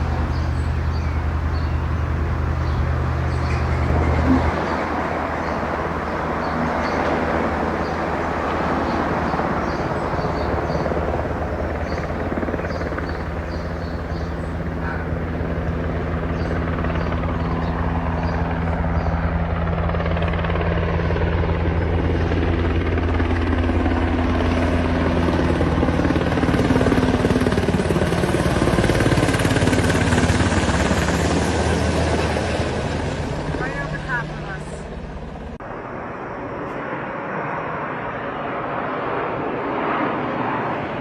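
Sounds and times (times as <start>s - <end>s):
helicopter rotor and engine: 0.0s - 41.0s.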